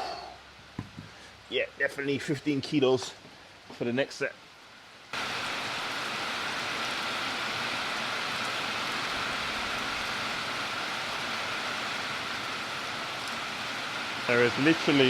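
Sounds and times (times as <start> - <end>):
heavy rain pouring: 5.2 - 15.0.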